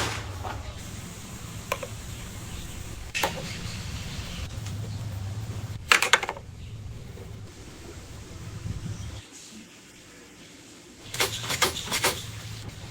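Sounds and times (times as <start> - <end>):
steady low hum: 0.0 - 9.2.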